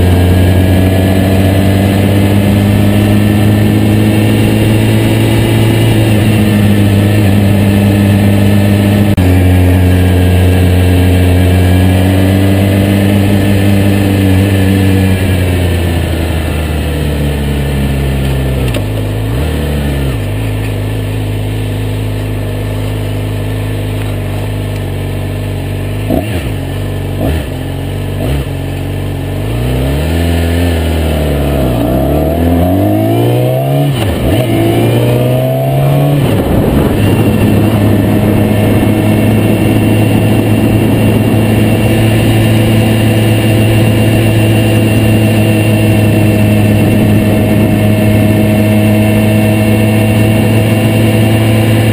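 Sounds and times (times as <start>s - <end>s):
motorcycle engine running: 0.0s - 51.9s
wind noise on microphone: 34.1s - 51.9s.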